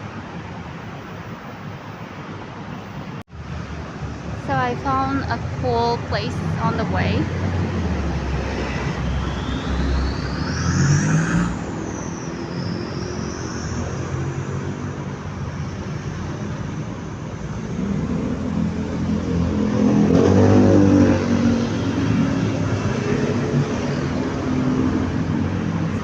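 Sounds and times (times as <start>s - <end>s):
street traffic: 0.0s - 26.0s
vehicle engine passing close: 13.2s - 26.0s.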